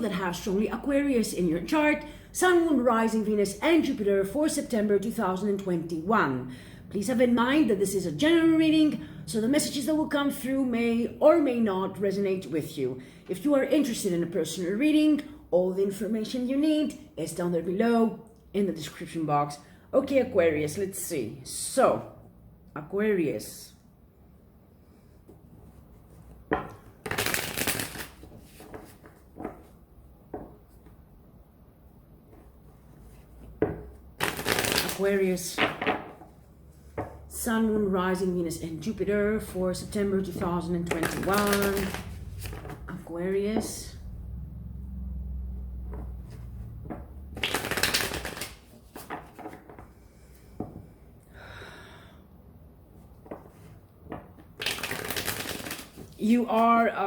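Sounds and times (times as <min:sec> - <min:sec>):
cards being shuffled: 0:25.6 - 0:29.8, 0:34.2 - 0:36.2, 0:40.3 - 0:43.0, 0:45.9 - 0:49.9, 0:54.6 - 0:56.6
cards slapping: 0:26.5 - 0:29.7, 0:34.2 - 0:36.1, 0:40.8 - 0:42.8, 0:46.9 - 0:49.8, 0:54.6 - 0:56.2.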